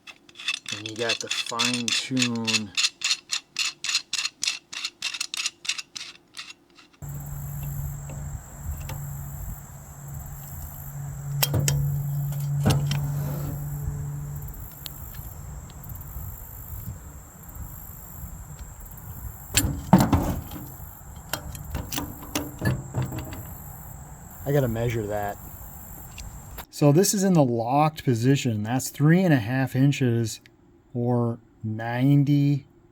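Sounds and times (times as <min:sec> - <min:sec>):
steady low hum: 0:07.0 - 0:26.6.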